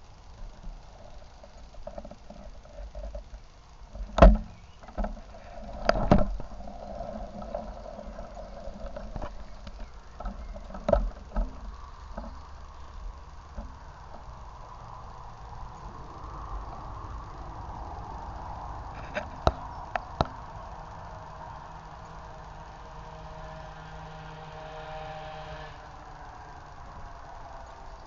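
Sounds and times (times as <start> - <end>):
stream water running: 0.0 - 28.0
sharp knocks and handling noise: 0.6 - 12.4.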